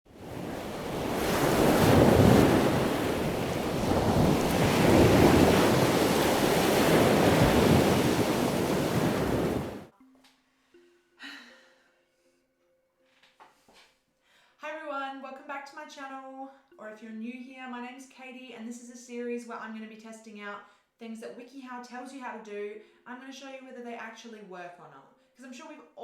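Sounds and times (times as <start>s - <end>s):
ocean waves washing in: 0.1s - 9.9s.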